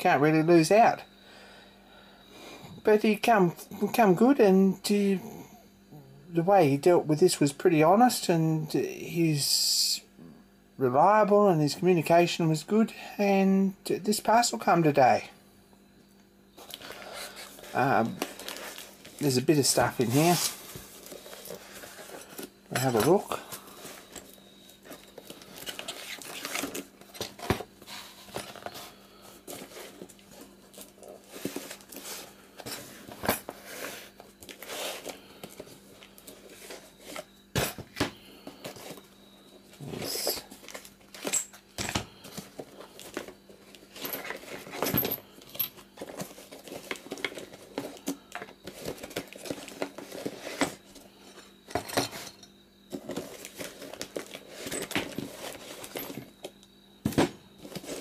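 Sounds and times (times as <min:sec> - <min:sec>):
paper and plastic crinkling and tearing: 0:18.1 - 0:19.3
metal tools clinking: 0:21.4 - 0:25.0, 0:43.9 - 0:46.2.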